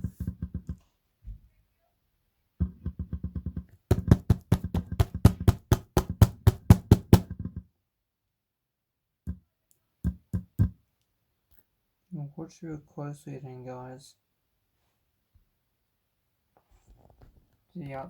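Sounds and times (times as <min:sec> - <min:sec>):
speaker cone thumping: 0:02.6 - 0:07.6.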